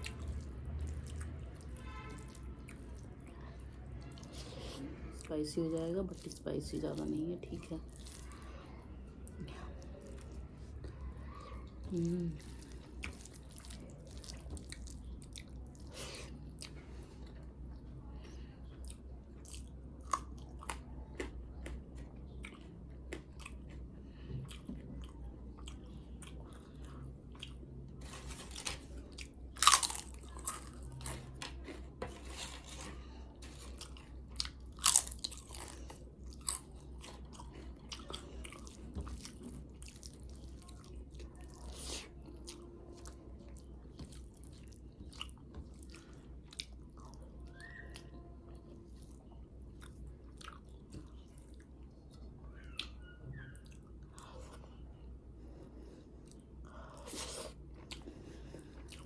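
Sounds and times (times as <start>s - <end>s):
wet chewing: 0.0s - 11.0s, 11.6s - 17.8s, 18.7s - 59.0s
crunching bites of crisp food: 25.6s - 40.9s.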